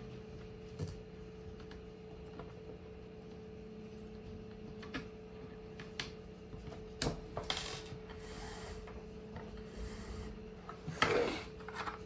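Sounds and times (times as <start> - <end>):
cord rasping through a hole: 9.6 - 10.4.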